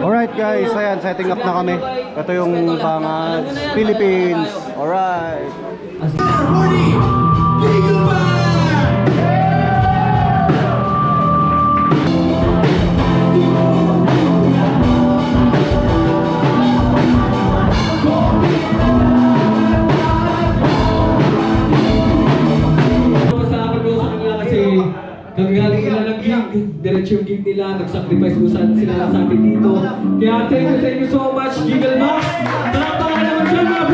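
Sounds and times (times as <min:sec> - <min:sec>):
rock music with singing: 0:06.1 - 0:24.5.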